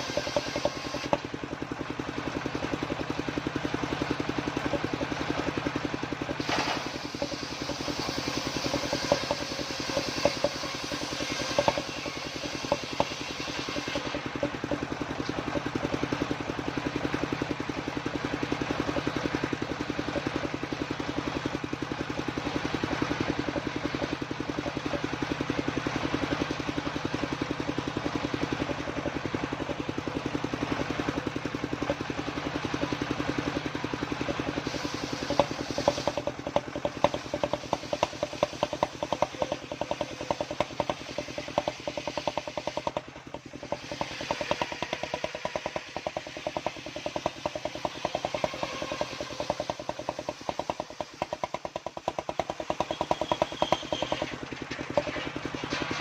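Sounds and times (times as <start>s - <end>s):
circular saw running: 0.0s - 56.0s
sharp knocks: 6.5s - 15.7s, 35.2s - 56.0s.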